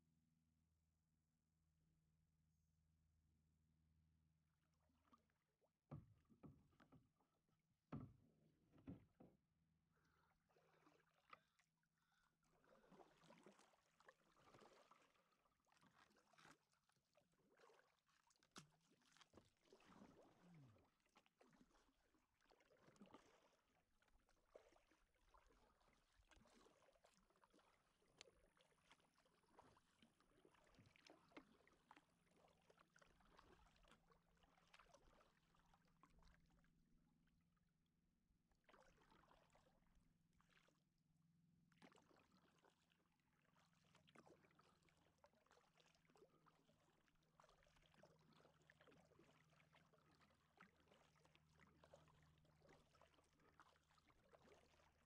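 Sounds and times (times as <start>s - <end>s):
water drips and knocks: 5.8s - 7.2s, 7.9s - 9.5s
paddle swishing and splashing: 10.4s - 36.7s, 38.6s - 40.8s, 41.7s - 46.6s.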